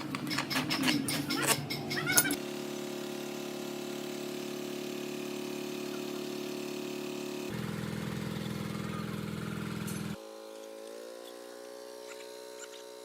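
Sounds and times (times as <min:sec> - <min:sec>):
clicking and chirping: 0:00.0 - 0:02.4, 0:12.0 - 0:12.9
small engine idling: 0:00.0 - 0:13.0.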